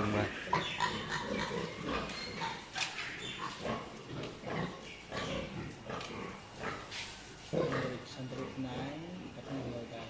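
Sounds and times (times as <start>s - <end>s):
pigs grunting: 0.0s - 9.8s.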